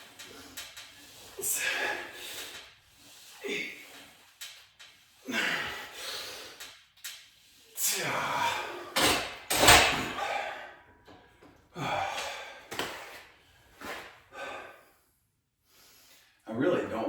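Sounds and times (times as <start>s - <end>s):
man exhaling hard: 1.4s - 2.4s.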